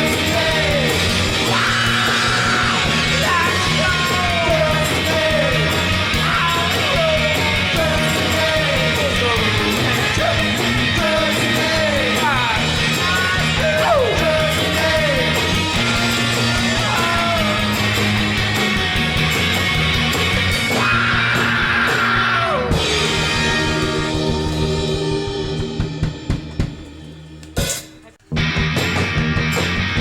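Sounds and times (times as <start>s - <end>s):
steady drum beat: 0.0s - 29.6s
rock song singing voice: 0.0s - 30.0s.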